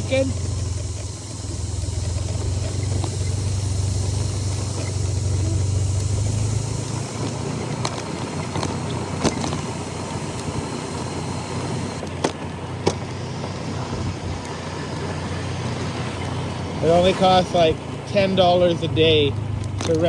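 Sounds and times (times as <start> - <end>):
scooter engine running: 0.0 - 20.0.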